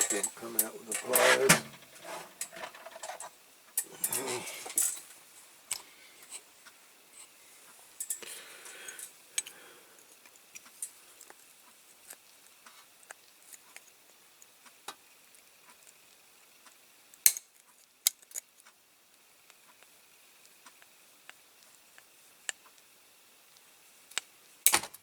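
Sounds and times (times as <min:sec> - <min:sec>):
hand tools clinking on metal: 0:00.0 - 0:01.6.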